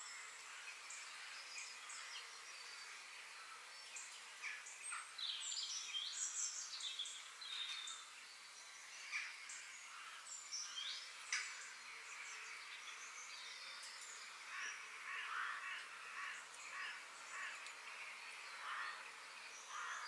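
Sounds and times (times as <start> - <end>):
birds chirping and trilling: 0.0 - 20.0
forest ambience hiss: 0.0 - 20.0
rough bird calls: 14.2 - 20.0.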